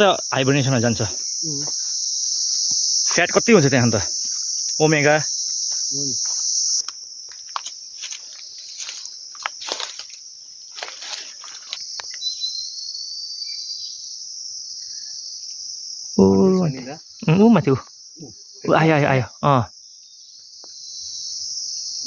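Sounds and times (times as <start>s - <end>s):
insect chorus drone: 0.0s - 22.0s
rustles and cracks: 6.8s - 12.2s.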